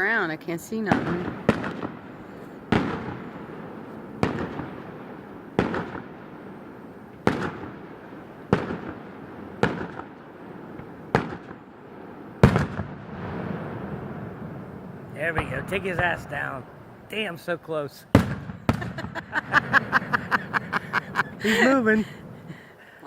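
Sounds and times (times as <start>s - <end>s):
fireworks booming with echo: 0.8s - 22.7s.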